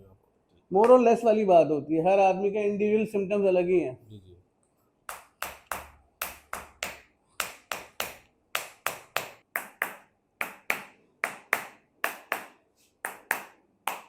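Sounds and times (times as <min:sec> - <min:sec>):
hammer tapping on body: 0:05.1 - 0:14.0.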